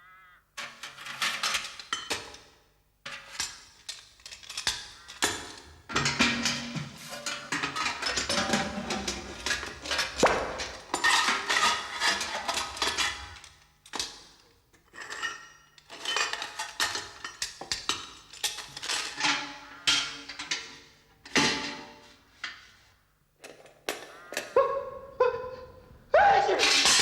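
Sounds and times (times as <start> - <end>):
metallic clanks and clatters: 3.1 - 22.6, 26.6 - 27.0.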